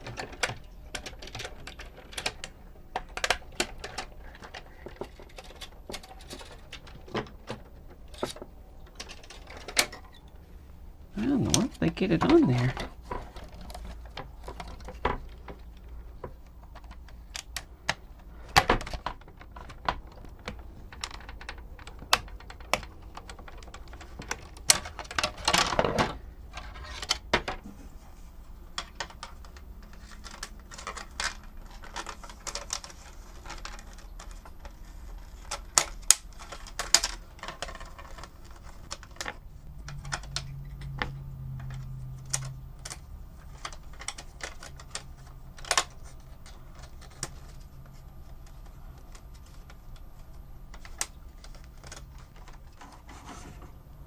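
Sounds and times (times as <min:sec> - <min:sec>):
small plastic parts clattering: 0:00.0 - 0:10.4, 0:11.3 - 0:27.7, 0:28.5 - 0:53.8
scraping rustle: 0:29.8 - 0:53.8.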